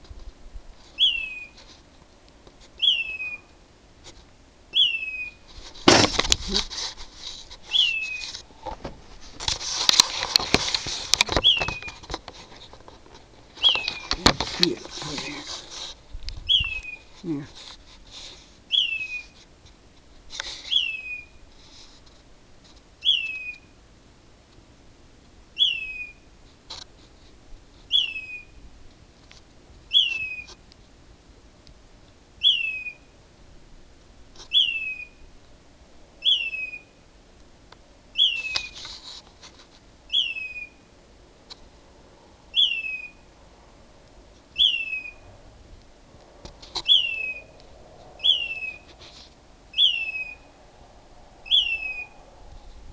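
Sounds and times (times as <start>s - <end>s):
bird falling whistle: 38.2s - 38.8s, 44.6s - 45.2s, 46.8s - 47.6s, 48.2s - 48.9s, 49.7s - 50.5s, 51.4s - 52.2s.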